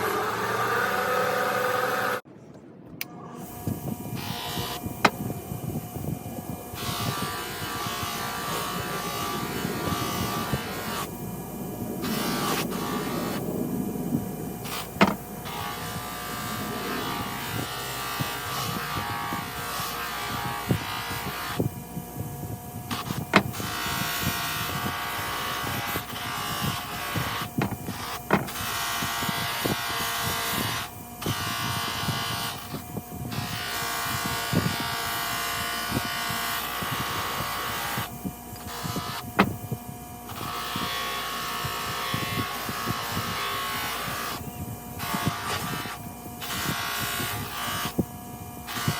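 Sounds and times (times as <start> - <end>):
power tool grinding rusty steel: 0.0 - 2.2, 3.4 - 48.9.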